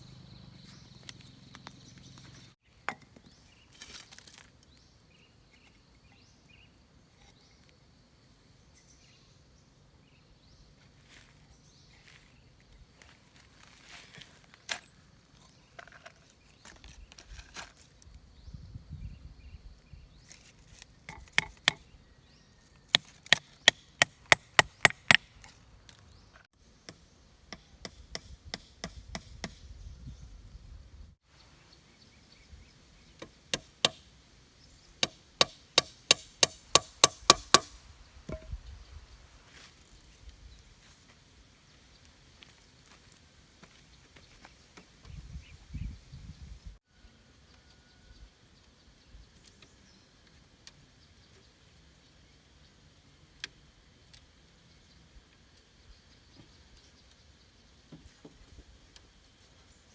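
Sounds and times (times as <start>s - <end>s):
rustling: 3.4s - 4.8s, 10.8s - 18.2s.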